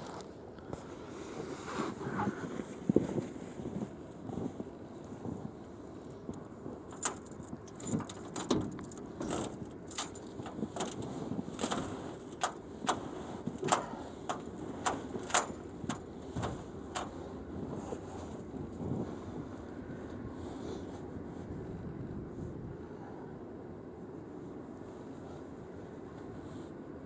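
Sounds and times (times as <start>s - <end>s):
snow crunching: 10.3s - 19.7s.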